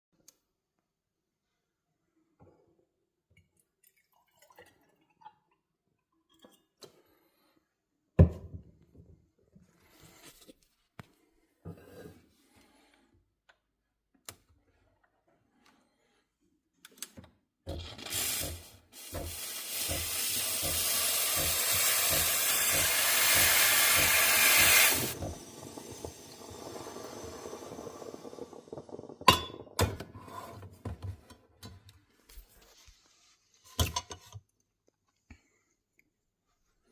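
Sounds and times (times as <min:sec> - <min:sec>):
steam wand hissing: 0:18.0 - 0:28.7.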